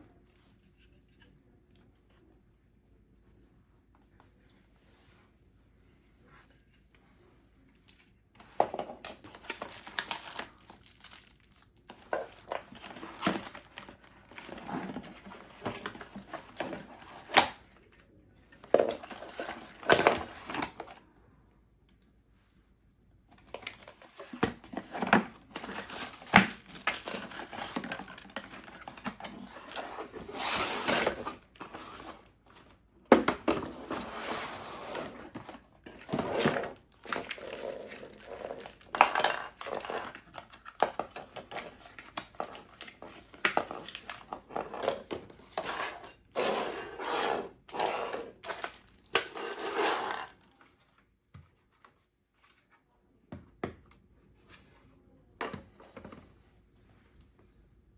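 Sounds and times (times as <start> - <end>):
cardboard packaging handled: 8.6 - 17.6, 23.4 - 50.8
packaging rustling: 9.2 - 17.5, 23.5 - 32.3.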